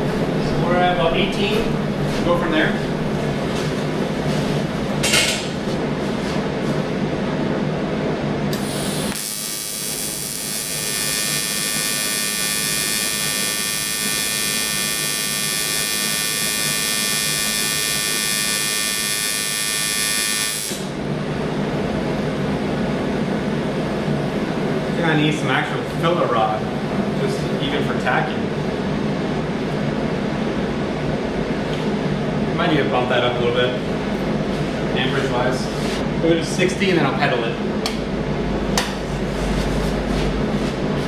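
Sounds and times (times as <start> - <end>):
welding arc buzzing: 8.5 - 21.1.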